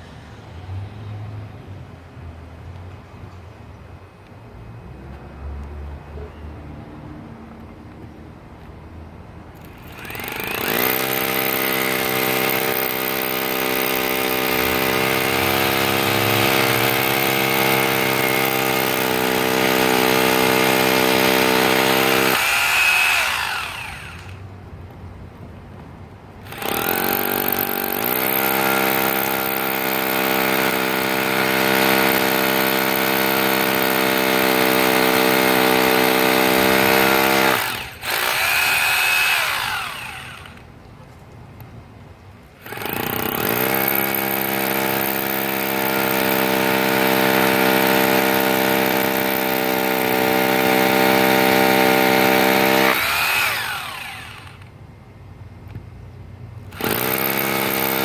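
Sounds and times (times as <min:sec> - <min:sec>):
hammer drill boring into concrete: 0:09.6 - 0:24.4, 0:26.5 - 0:40.6, 0:42.6 - 0:54.7, 0:56.7 - 0:58.0.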